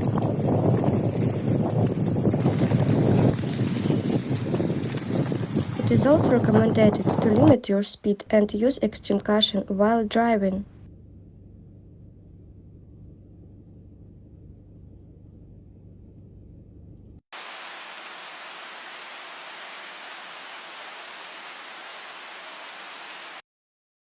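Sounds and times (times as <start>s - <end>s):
low steady rumble: 8.3s - 17.2s
heavy rain hiss: 17.4s - 23.4s.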